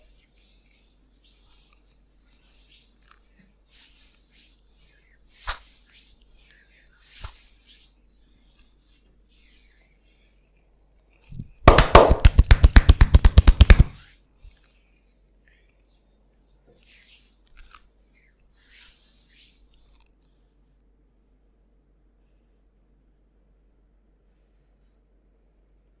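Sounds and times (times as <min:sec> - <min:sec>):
hands rubbing on skin: 0:00.0 - 0:10.2, 0:11.2 - 0:14.7
hands slapping skin rapidly: 0:05.4 - 0:05.7, 0:11.3 - 0:14.0.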